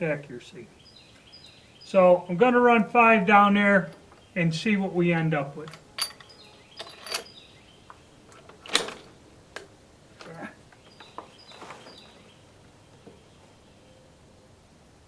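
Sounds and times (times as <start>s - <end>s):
metallic clicks of rifle handling: 5.7s - 10.3s.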